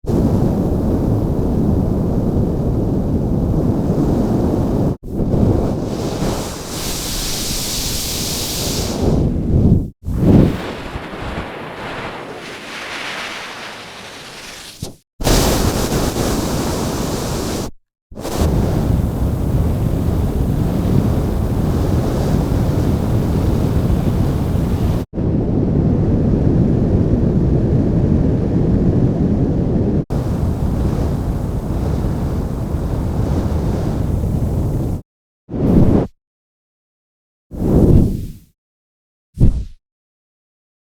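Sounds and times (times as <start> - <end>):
flamethrower blast: 10.0 - 17.2
hissing spray: 12.2 - 17.6.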